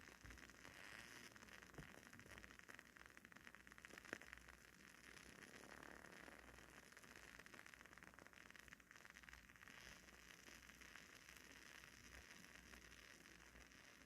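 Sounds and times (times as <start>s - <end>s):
candle wick crackling: 0.0s - 14.0s.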